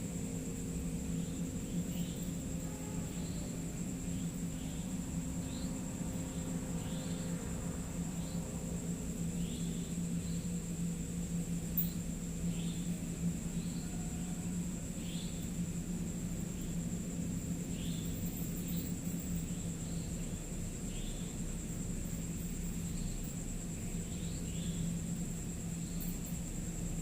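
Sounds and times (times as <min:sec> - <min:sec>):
insect chirps: 0:00.0 - 0:27.0
low steady hum: 0:00.0 - 0:27.0.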